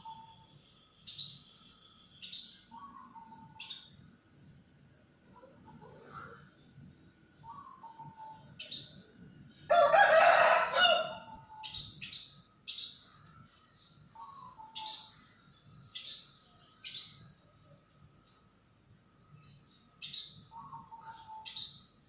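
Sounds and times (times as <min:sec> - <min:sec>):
small birds chirping: 0:00.0 - 0:04.1, 0:05.3 - 0:09.7, 0:11.3 - 0:22.0
rooster crowing: 0:09.7 - 0:11.6.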